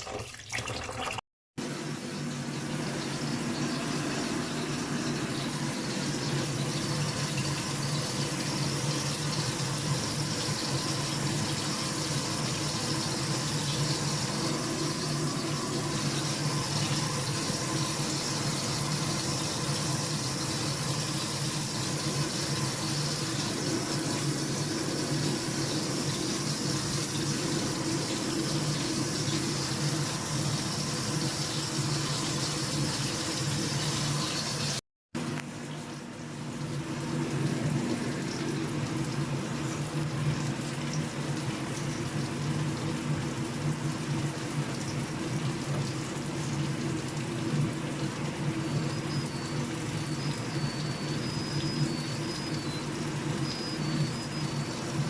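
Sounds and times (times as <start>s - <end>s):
tap water running into sink: 0.0s - 1.2s, 2.2s - 34.8s, 35.4s - 55.0s.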